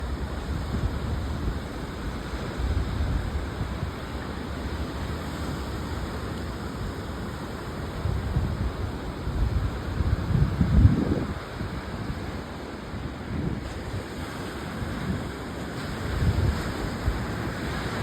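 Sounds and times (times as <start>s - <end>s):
ocean surf on beach: 0.0s - 18.0s
wind buffeting microphone: 8.0s - 12.4s, 13.0s - 18.0s.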